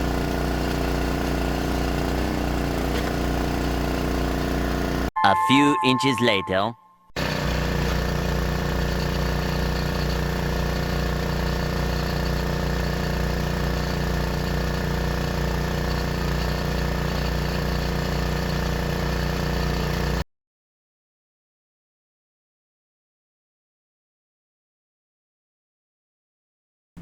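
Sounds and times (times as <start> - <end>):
gas engine running: 0.0 - 5.1, 7.2 - 20.2.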